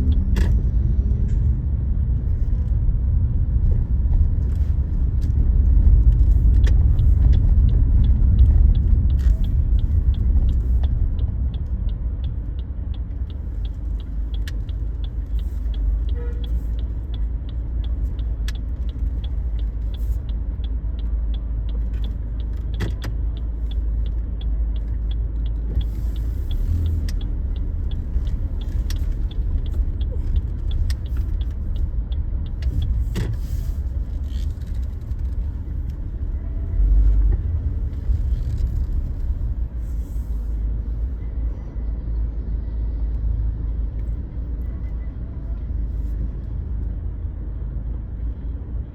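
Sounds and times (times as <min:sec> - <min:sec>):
car road and engine rumble: 0:00.0 - 0:48.9
light regular ticking: 0:05.3 - 0:40.0.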